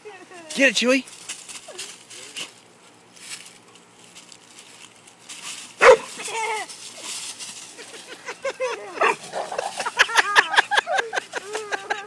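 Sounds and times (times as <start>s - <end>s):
dog barking: 5.8s - 6.1s, 9.0s - 9.2s.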